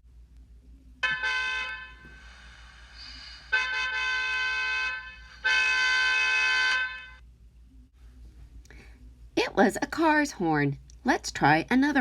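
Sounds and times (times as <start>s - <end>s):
car horn honking: 1.0s - 2.1s, 3.5s - 7.2s.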